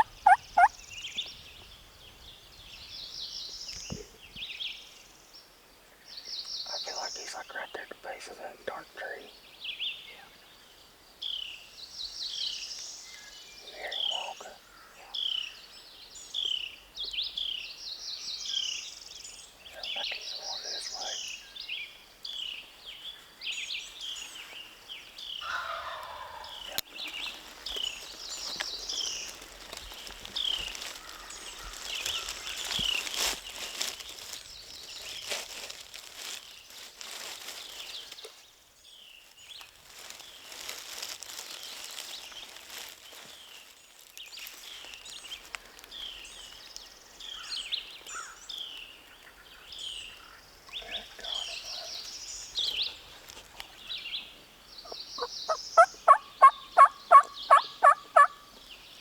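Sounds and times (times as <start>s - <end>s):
turkey gobbling: 0.0s - 0.7s, 54.9s - 58.4s
songbirds chorus: 0.0s - 59.0s.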